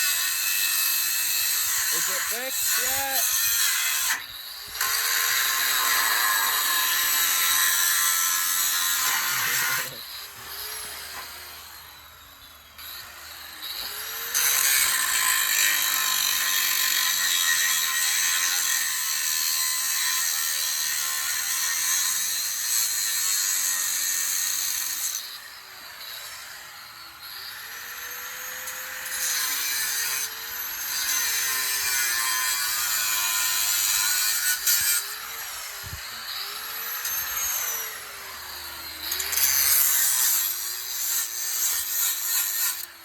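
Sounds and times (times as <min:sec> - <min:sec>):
power tool whirring: 0:18.4 - 0:43.0.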